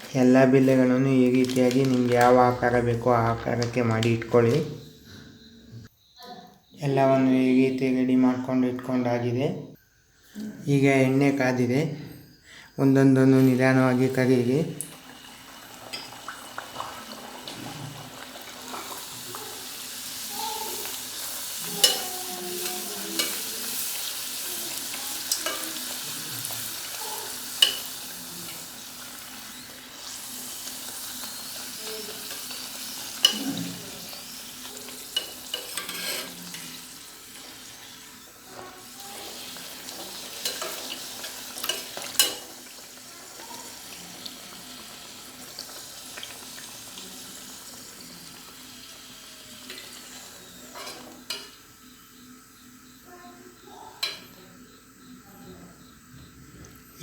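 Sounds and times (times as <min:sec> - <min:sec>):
food deep-frying in oil: 0:00.0 - 0:04.6, 0:13.3 - 0:52.9.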